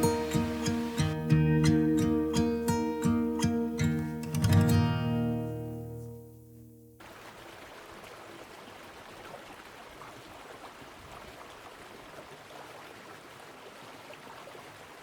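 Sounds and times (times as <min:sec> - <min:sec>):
mountain creek rushing: 0:00.0 - 0:01.4, 0:07.0 - 0:15.0
guitar music: 0:00.0 - 0:07.0.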